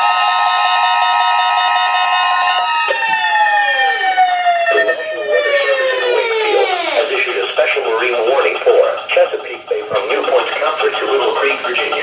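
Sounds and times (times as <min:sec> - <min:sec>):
electronic alert tone sliding down: 0:03.0 - 0:07.1.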